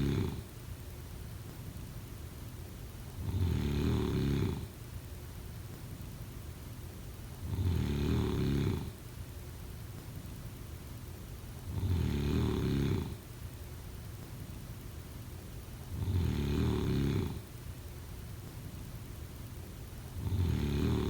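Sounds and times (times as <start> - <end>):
person snoring: 0.0 - 0.4, 3.2 - 4.7, 7.5 - 8.9, 11.8 - 13.2, 16.0 - 17.4, 20.2 - 21.0.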